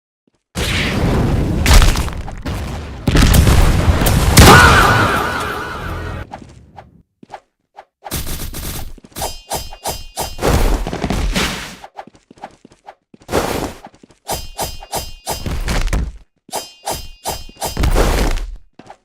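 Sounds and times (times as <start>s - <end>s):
short metallic rings: 9.2s - 10.4s, 14.3s - 15.6s, 16.5s - 17.9s.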